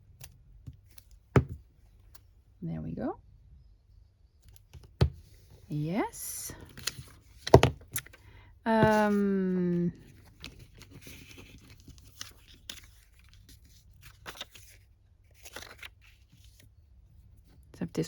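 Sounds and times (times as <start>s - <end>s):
paper tearing and rustling: 10.4s - 16.6s.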